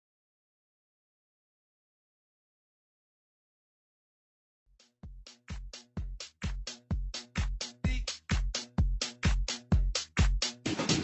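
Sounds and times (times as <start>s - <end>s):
electronic dance music: 5.2s - 11.0s.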